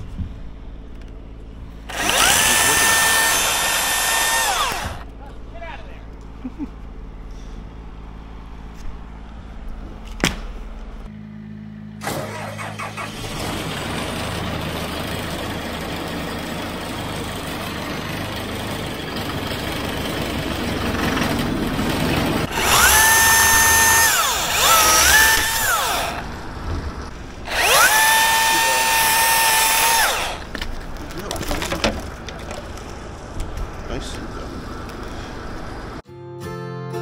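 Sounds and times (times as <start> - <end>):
machine engine running: 1.6 - 5.1, 11.1 - 30.9
power saw motor whine: 1.9 - 5.0, 18.4 - 30.6.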